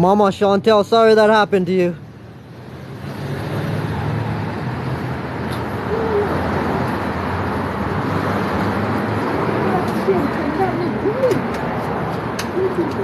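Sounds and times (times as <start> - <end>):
motor vehicles passing: 1.1 - 13.0.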